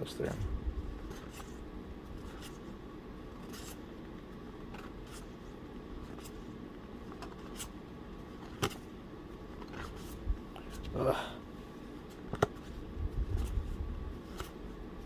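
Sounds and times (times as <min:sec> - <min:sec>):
cards being flipped: 0:01.0 - 0:01.6, 0:03.4 - 0:03.8, 0:04.7 - 0:05.3, 0:07.1 - 0:07.8, 0:08.4 - 0:08.9, 0:09.6 - 0:10.8, 0:12.1 - 0:14.6.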